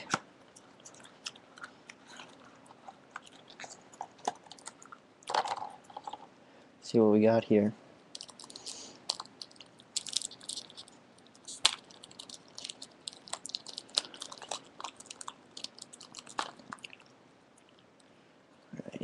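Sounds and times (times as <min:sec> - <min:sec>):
card packaging crinkling: 0:08.2 - 0:17.0.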